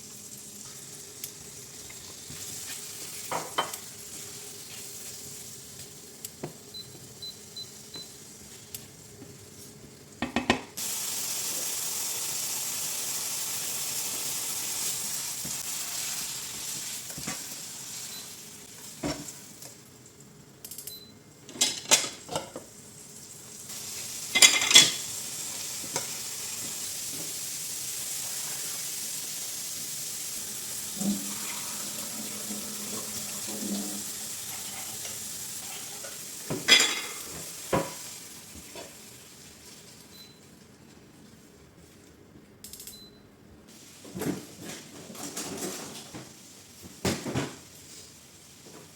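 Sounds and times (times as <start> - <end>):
food sizzling in frying pan: 0.0 - 10.2, 10.8 - 20.3, 21.8 - 40.2, 43.7 - 44.2.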